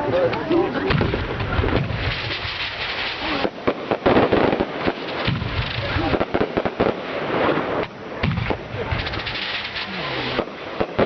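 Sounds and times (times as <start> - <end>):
fireworks crackling and banging: 0.0 - 11.0.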